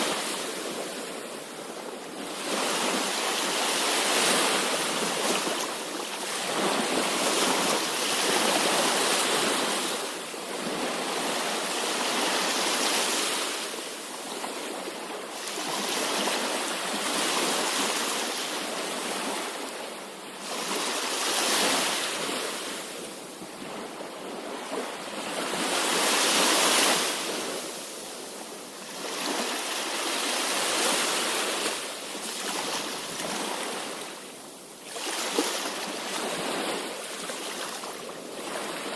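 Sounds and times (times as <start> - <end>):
sea waves breaking: 28.8 - 38.9.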